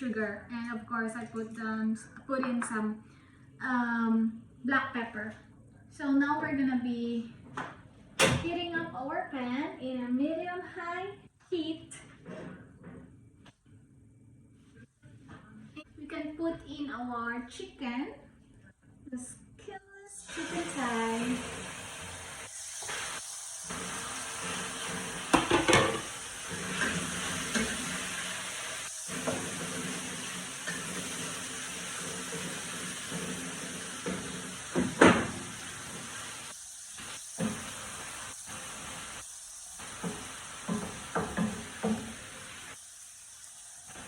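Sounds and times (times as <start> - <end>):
chicken sizzling in a pan: 20.2 - 44.0.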